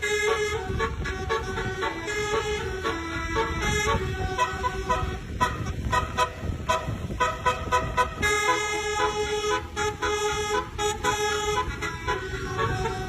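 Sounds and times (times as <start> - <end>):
multi-tone horn melody: 0.0 - 13.0.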